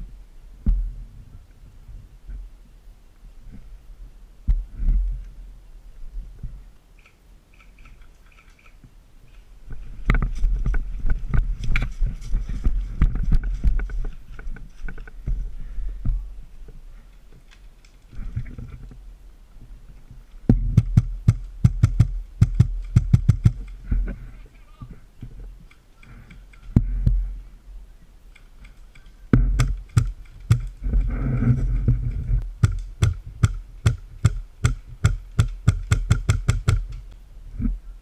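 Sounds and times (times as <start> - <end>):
low rumble on microphone: 0.0 - 6.8, 9.6 - 17.1, 18.1 - 25.6, 26.3 - 28.2, 29.2 - 35.3, 36.8 - 38.0
airsoft guns firing: 29.4 - 30.8, 32.6 - 36.9.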